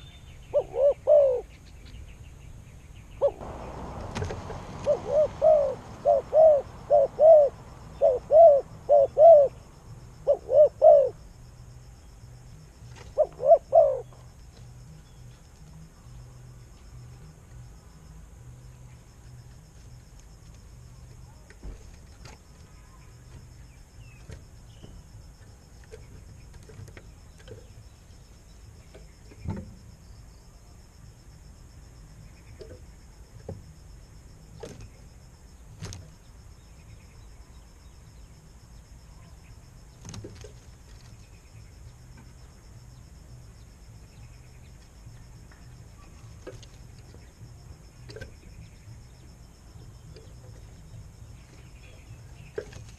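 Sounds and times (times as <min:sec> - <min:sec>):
high insect drone: 0:00.0 - 0:52.9
low rumble: 0:03.0 - 0:08.9.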